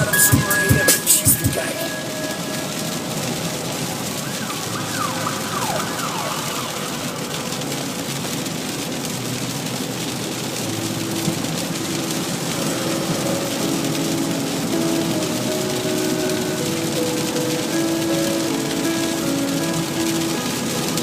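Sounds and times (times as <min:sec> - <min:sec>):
siren-like wail: 0:00.0 - 0:08.5
held musical tones: 0:00.0 - 0:21.0
steady hiss: 0:00.0 - 0:21.0.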